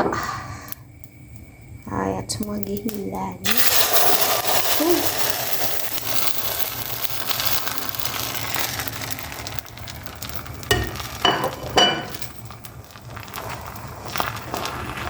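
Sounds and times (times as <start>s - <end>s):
egg sizzling in a pan: 0.5s - 15.0s
utensil clinking against pan: 10.7s - 12.4s.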